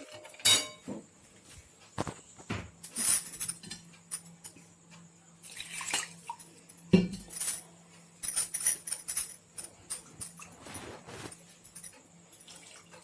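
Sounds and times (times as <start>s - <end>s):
metal kitchenware clinking: 0.0s - 0.9s, 2.8s - 4.6s, 5.8s - 10.8s.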